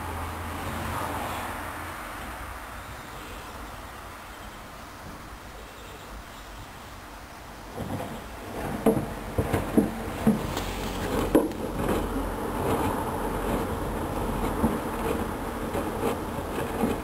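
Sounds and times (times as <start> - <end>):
washing machine low hum: 7.6 - 17.0
washing machine drum churning: 7.7 - 17.0.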